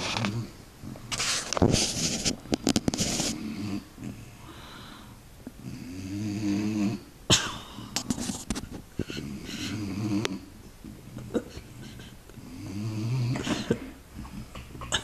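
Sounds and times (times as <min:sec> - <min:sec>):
pet snoring: 0:00.0 - 0:04.5, 0:05.6 - 0:07.1, 0:09.0 - 0:15.0.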